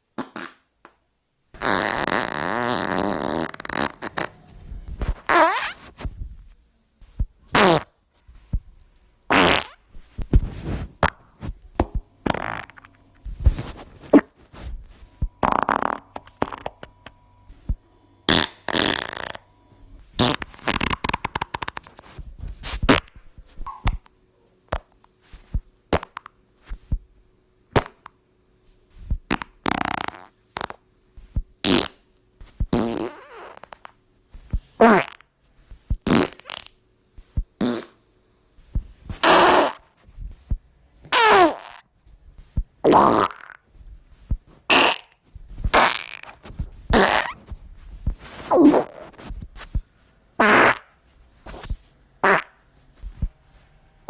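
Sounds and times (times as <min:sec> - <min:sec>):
fart sounds: 0:00.2 - 0:00.7, 0:01.6 - 0:06.2, 0:07.5 - 0:08.0, 0:09.3 - 0:17.2, 0:18.3 - 0:19.5, 0:20.1 - 0:24.1, 0:25.9 - 0:26.4, 0:27.8 - 0:28.1, 0:29.2 - 0:30.8, 0:31.6 - 0:32.0, 0:32.6 - 0:34.0, 0:34.8 - 0:35.3, 0:35.9 - 0:38.0, 0:39.1 - 0:40.0, 0:41.0 - 0:41.9, 0:42.8 - 0:43.7, 0:44.7 - 0:49.8, 0:50.4 - 0:53.3.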